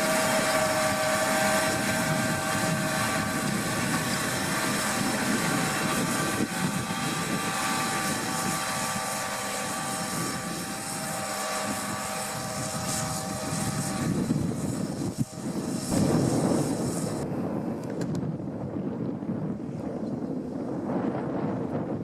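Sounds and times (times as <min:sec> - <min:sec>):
tractor diesel engine running: 0:00.0 - 0:17.2
steady whine: 0:00.0 - 0:22.0.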